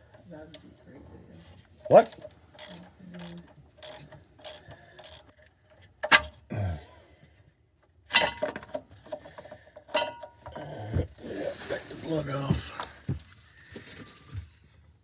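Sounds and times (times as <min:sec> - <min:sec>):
ratchet wrench clicking: 0:02.6 - 0:05.3.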